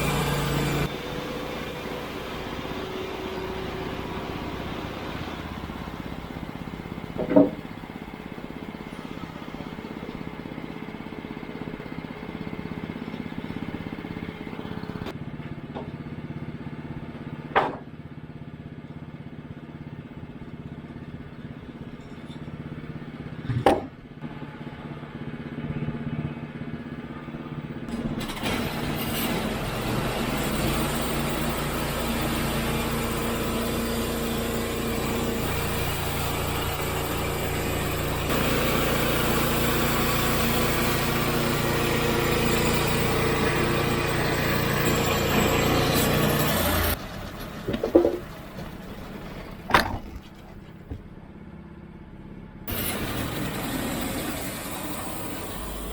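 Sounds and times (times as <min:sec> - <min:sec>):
band saw cutting wood: 0:00.0 - 0:05.7, 0:27.9 - 0:47.0, 0:52.7 - 0:55.9
sawmill engine running: 0:00.0 - 0:51.9, 0:52.7 - 0:55.9
sharp knocks: 0:07.2 - 0:07.7, 0:17.5 - 0:17.9, 0:23.4 - 0:24.0, 0:47.7 - 0:48.3, 0:49.7 - 0:51.1.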